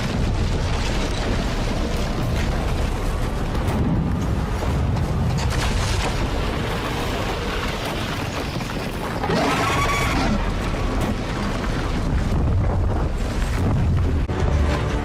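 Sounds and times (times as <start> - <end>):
rumbling roar: 9.1 - 14.3.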